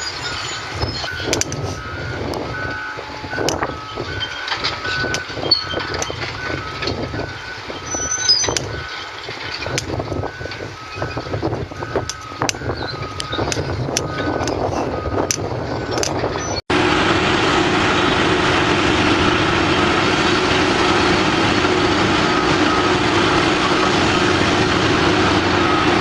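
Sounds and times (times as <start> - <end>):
reversing alarm beeping: 0.0 - 16.6, 21.9 - 26.0
engine running: 0.0 - 26.0
knocks and clanks: 3.3 - 16.4.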